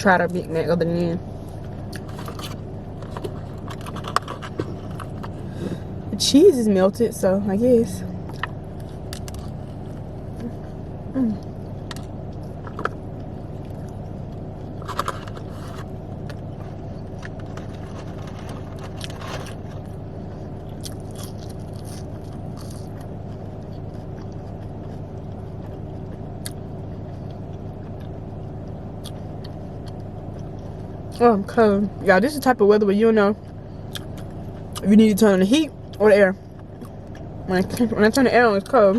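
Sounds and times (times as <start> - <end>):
car engine and air conditioning hum: 0.0 - 38.9
faint chewing: 1.5 - 5.8, 11.4 - 31.2.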